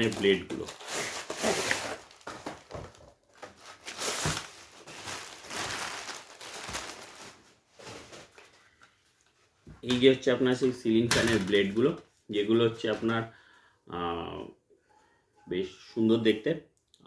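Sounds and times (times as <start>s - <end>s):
packaging rustling and crinkling: 0.0s - 9.6s, 10.6s - 12.0s.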